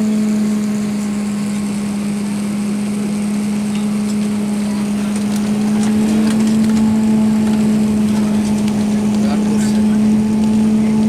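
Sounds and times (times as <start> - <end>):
jet engine and airflow drone: 0.0 - 11.0.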